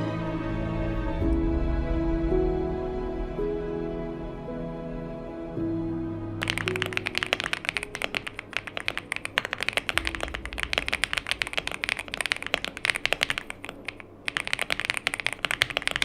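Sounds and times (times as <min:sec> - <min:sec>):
mechanical keyboard typing: 0:06.4 - 0:16.0.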